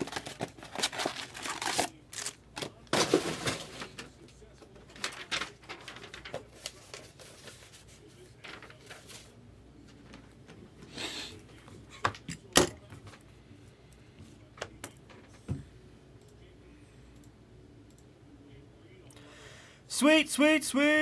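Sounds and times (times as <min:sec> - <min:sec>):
packaging rustling: 0:00.0 - 0:09.4.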